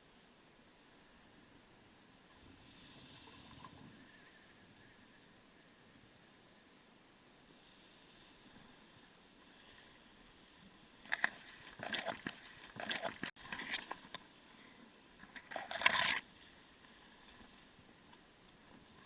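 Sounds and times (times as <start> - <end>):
small objects clicking and rattling: 11.1 - 14.0, 15.4 - 16.2.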